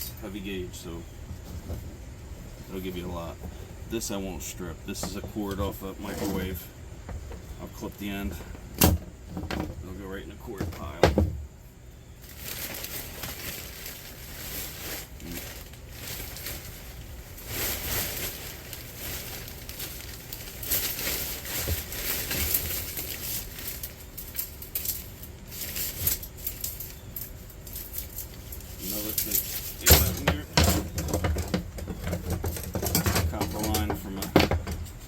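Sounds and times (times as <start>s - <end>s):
wires rustling and clinking: 12.2s - 35.0s.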